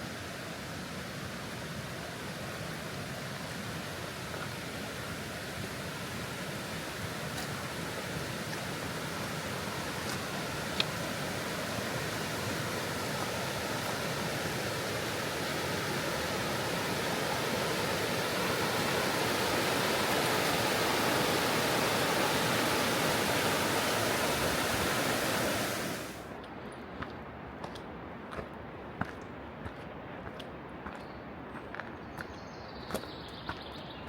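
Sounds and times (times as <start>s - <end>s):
river water rushing: 0.0s - 26.4s.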